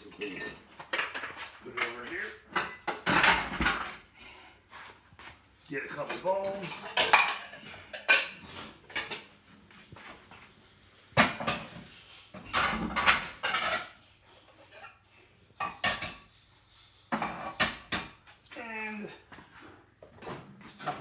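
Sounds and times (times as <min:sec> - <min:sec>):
bowls clinking and clattering: 0:00.0 - 0:04.0, 0:06.1 - 0:09.4.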